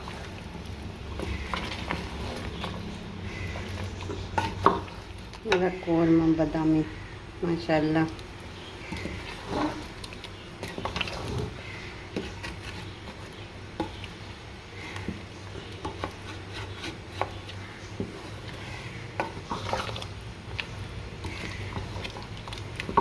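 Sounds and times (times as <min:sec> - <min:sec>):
spoon scraping a pot: 0:00.0 - 0:05.9, 0:08.6 - 0:23.0.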